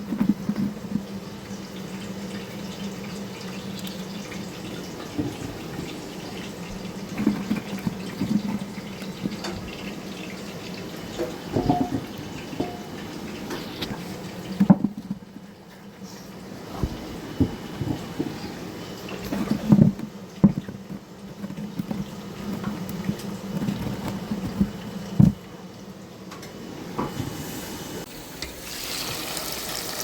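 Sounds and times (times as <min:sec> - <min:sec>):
potatoes rubbed under water: 0:00.0 - 0:01.2, 0:05.2 - 0:10.1, 0:16.6 - 0:25.4
tap water running into sink: 0:00.1 - 0:15.5
knocks: 0:11.5 - 0:12.8.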